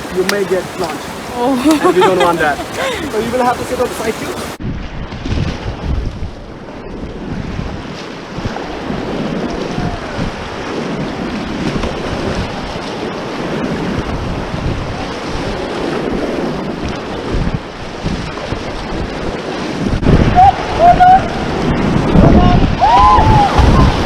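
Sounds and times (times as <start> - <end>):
river water rushing: 0.0 - 4.6
wind buffeting microphone: 0.0 - 12.8, 16.1 - 24.0.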